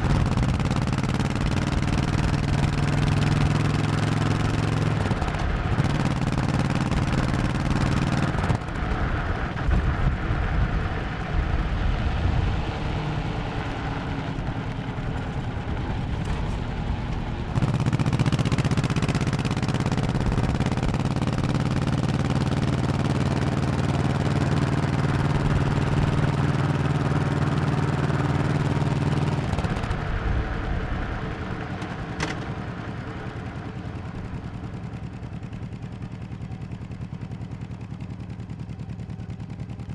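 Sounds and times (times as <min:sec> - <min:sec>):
motorcycle engine running: 0:00.0 - 0:39.9
engine pops: 0:31.4 - 0:33.5.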